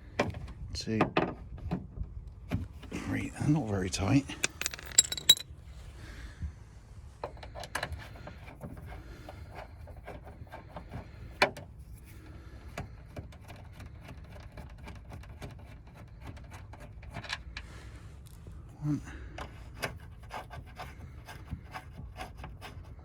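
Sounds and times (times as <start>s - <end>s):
metal and plastic clicks and rattles: 4.4s - 5.4s.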